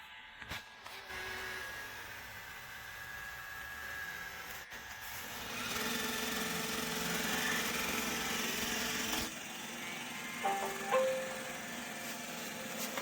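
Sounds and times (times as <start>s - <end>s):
robot vacuum motors whirring: 0.4s - 10.5s.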